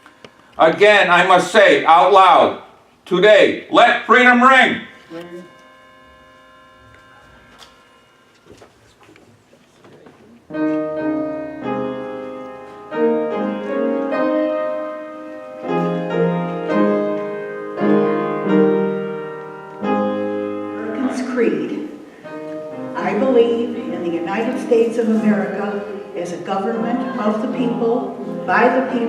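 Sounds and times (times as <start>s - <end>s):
slow piano chords: 4.9s - 8.3s, 10.5s - 29.0s.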